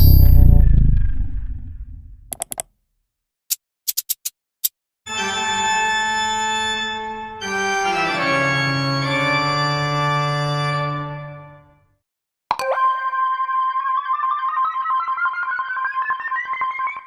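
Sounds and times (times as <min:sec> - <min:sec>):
electronic tone: 0:00.0 - 0:01.3
electronic organ-like chord: 0:05.1 - 0:11.7.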